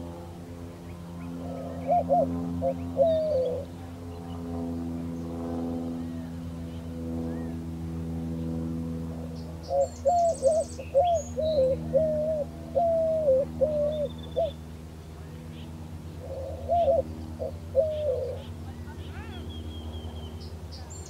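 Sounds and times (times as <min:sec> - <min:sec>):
steady low hum: 0:00.0 - 0:21.0
dove cooing: 0:01.4 - 0:03.9, 0:09.6 - 0:14.7, 0:16.1 - 0:19.3
small bird chirping: 0:09.4 - 0:12.2, 0:13.8 - 0:14.6.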